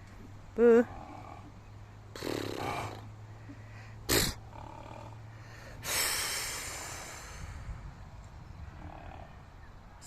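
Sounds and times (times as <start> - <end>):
horse snorting: 2.1 - 3.1, 4.1 - 5.2.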